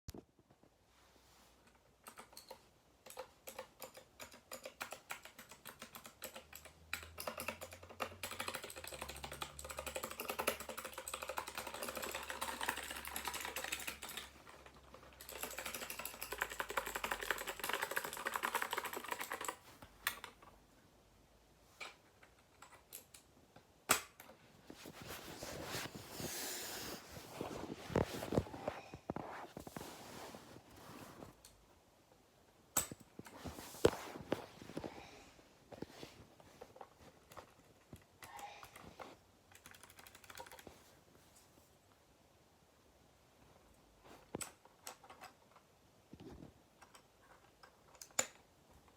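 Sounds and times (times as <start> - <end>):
mechanical keyboard clicking: 2.0 - 20.4, 39.5 - 40.6
rustling: 24.4 - 31.6, 33.1 - 37.8.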